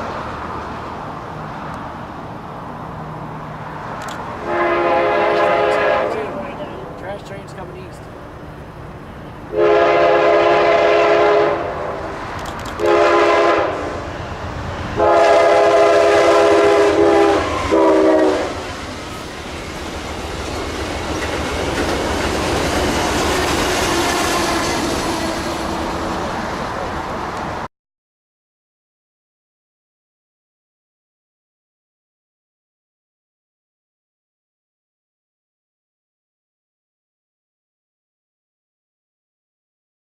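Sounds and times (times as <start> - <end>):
locomotive horn blasts: 4.4 - 6.6, 9.5 - 12.2, 12.8 - 14.1, 15.0 - 18.6
train wheels clattering on rail: 17.4 - 27.6.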